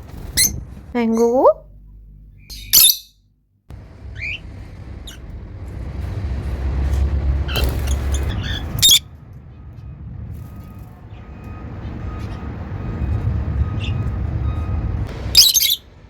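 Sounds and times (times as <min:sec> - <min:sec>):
low rumble: 0:00.0 - 0:16.0
lovebird chirp: 0:00.4 - 0:00.6, 0:02.4 - 0:03.2, 0:08.1 - 0:09.0, 0:15.2 - 0:15.9
lovebird squawks: 0:02.5 - 0:03.1, 0:08.2 - 0:09.0, 0:15.4 - 0:15.9.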